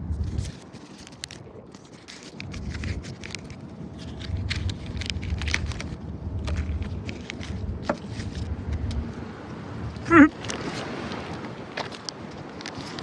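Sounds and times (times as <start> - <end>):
low steady rumble: 0.0 - 0.6, 2.4 - 10.5
wrapper crinkling: 0.2 - 9.1
card pack wrapper tearing: 0.3 - 8.9.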